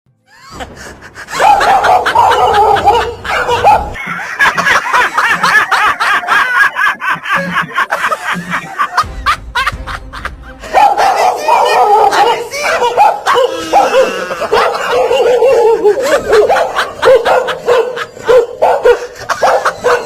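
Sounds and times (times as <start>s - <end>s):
music: 0.1s - 4.0s, 7.3s - 20.0s
rapid high-pitched laughter: 0.3s - 20.0s.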